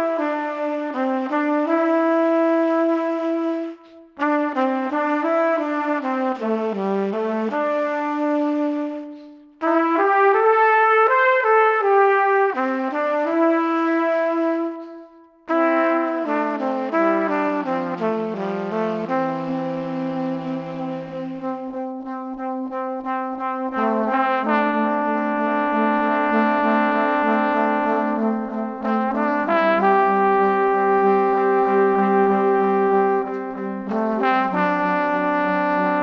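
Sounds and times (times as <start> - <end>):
lower brass: 0.0 - 36.0
trumpet melody: 0.0 - 36.0.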